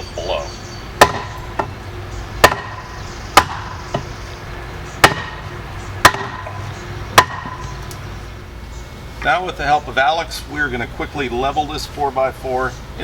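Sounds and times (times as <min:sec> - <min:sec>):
hammer striking wood block: 0:01.0 - 0:01.7, 0:02.4 - 0:04.1, 0:05.0 - 0:05.4, 0:06.0 - 0:06.6, 0:07.2 - 0:07.6.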